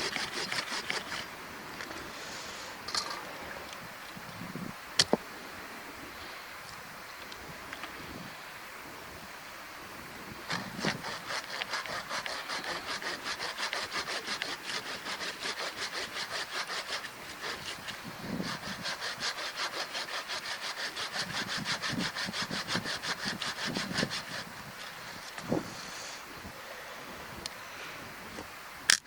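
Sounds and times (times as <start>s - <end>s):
hand saw cutting wood: 0.0s - 1.3s, 10.5s - 24.5s.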